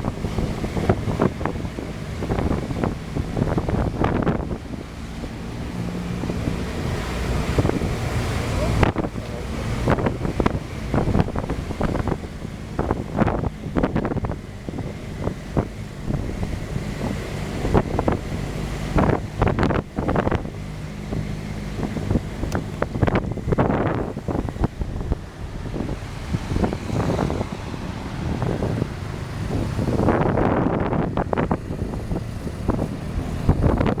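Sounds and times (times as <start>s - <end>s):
vehicle engine and road noise: 0.0s - 34.0s
wind buffeting microphone: 0.0s - 34.0s.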